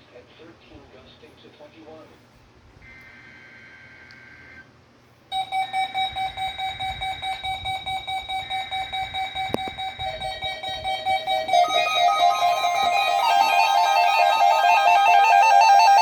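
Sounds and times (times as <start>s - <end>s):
alarm tones at other pitches: 5.3s - 16.0s
pulsing electronic alarm beeps: 5.3s - 16.0s.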